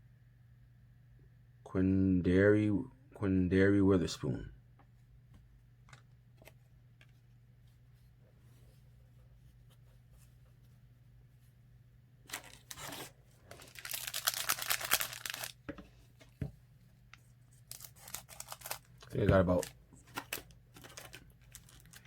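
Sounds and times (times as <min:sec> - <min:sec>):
foil crinkling: 0:12.3 - 0:15.6, 0:17.6 - 0:22.0
foil wrapper tearing: 0:12.3 - 0:15.6, 0:17.6 - 0:22.0.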